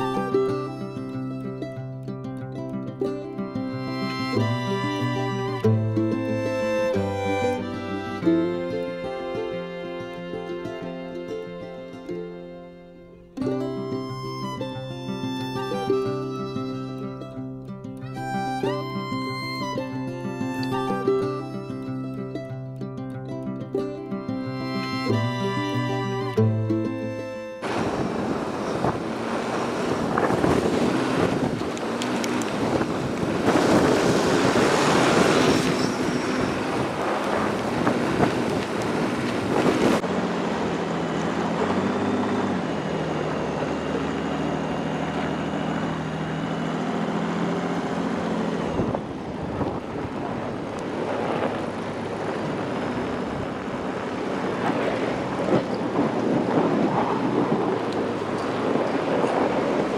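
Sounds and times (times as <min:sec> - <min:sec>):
vehicle engine running: 0:00.0 - 0:59.9
wind on microphone: 0:25.1 - 0:40.2, 0:47.9 - 0:59.9.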